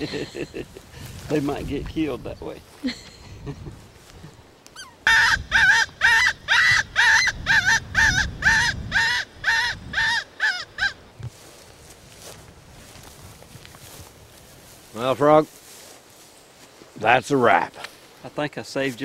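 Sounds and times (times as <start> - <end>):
squealing predator call whistle: 4.8 - 10.9.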